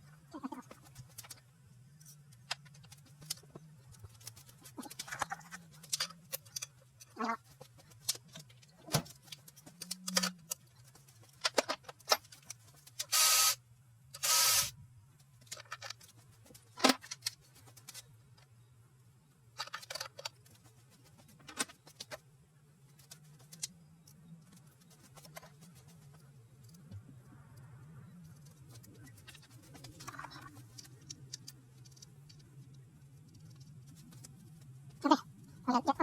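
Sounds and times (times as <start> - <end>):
faint steady hum: 0.0 - 36.0
metal tools clicking and knocking: 4.2 - 13.1, 19.6 - 20.5.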